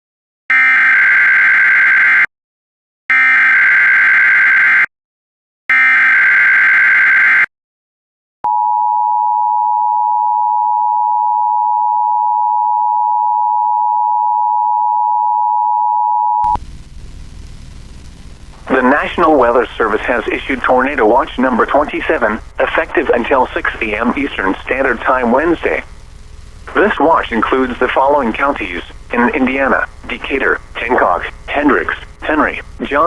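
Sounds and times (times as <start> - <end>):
faint radio hiss: 16.6 - 33.0.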